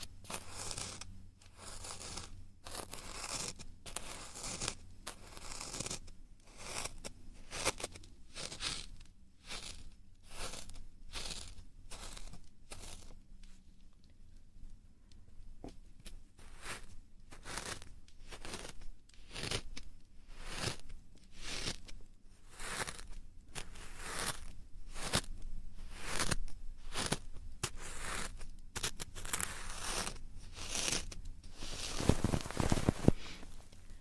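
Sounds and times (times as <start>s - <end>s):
crackly scratching: 0.0s - 14.1s, 16.0s - 34.0s
rubbing strokes on microphone: 29.2s - 33.7s.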